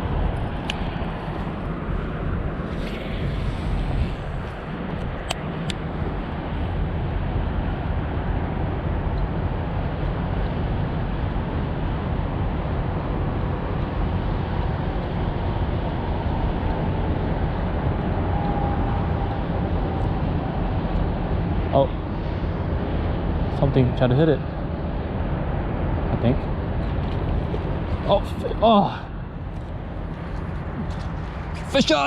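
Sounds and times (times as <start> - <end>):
low rumbling outdoor noise: 0.0 - 32.0.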